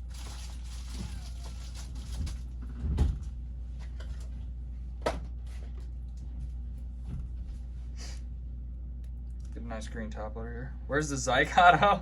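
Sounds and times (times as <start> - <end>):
packaging rustle: 0.0 - 2.6
steady low hum: 0.0 - 12.0.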